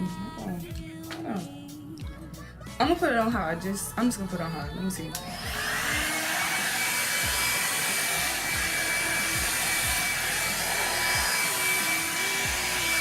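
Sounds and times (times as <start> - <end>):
hair dryer brush running: 5.1 - 13.0.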